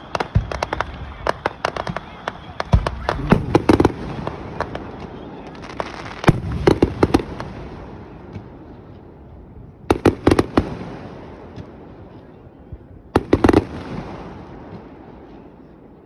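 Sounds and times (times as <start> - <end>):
fireworks bangs and crackles: 0.0 - 16.0.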